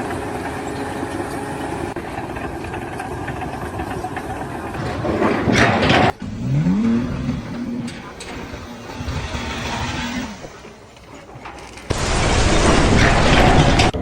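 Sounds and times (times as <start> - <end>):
engine running steadily: 0.0 - 10.8.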